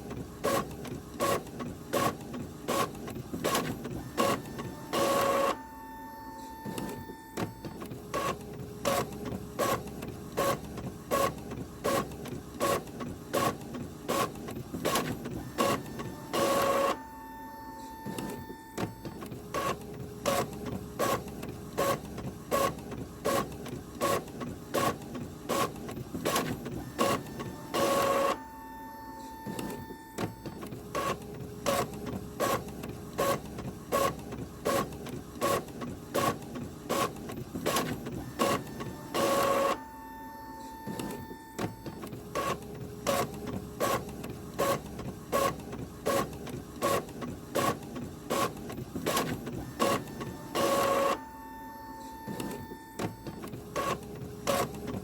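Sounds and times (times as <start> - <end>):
printer clicking: 40.6 - 51.4, 52.0 - 55.0.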